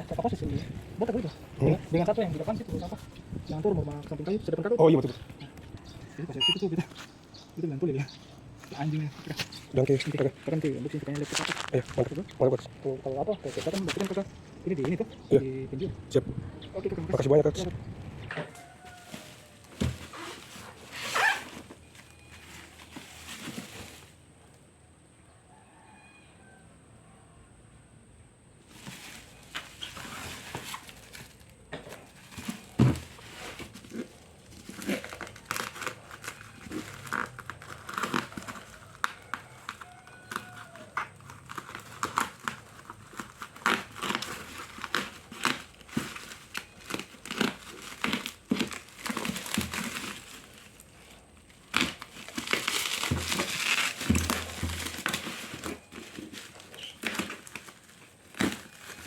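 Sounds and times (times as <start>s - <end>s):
wrapping crinkling and tearing: 8.6s - 12.6s, 18.5s - 24.5s, 28.7s - 59.0s.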